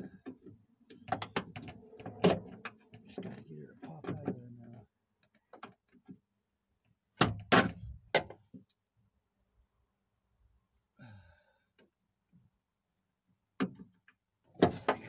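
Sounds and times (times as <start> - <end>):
person sighing: 11.0 - 11.6.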